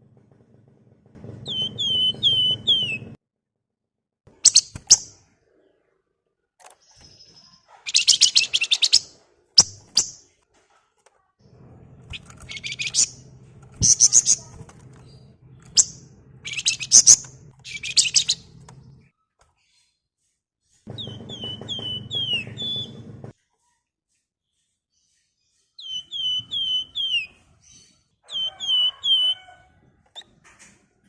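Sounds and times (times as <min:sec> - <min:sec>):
birds trilling chatter: 0:01.4 - 0:03.2, 0:06.7 - 0:10.2, 0:11.8 - 0:19.9, 0:20.8 - 0:23.3, 0:24.5 - 0:30.7.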